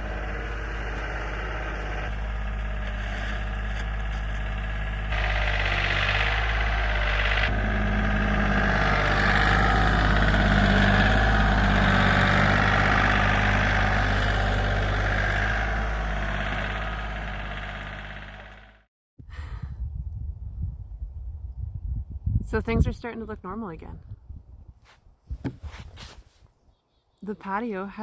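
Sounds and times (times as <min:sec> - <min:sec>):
engine running steadily: 0:00.0 - 0:18.8.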